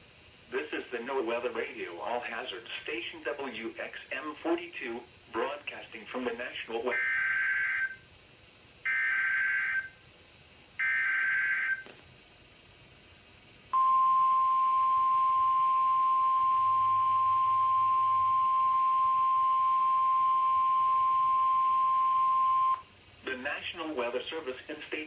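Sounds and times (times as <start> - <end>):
steady warning alarm tone: 6.9 - 8.0, 8.9 - 10.0, 10.8 - 11.8, 13.8 - 22.8.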